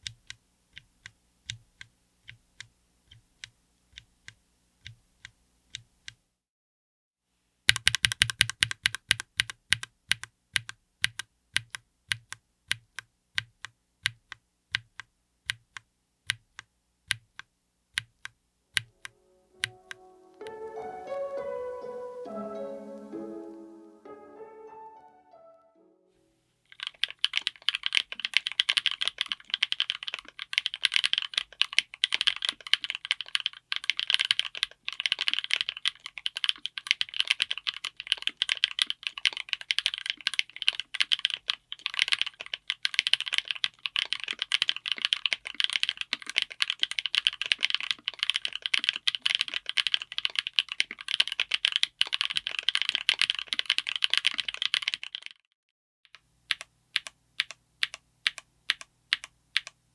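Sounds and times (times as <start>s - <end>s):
typing on mechanical keyboard: 7.7s - 19.1s, 26.7s - 55.4s, 56.1s - 59.8s.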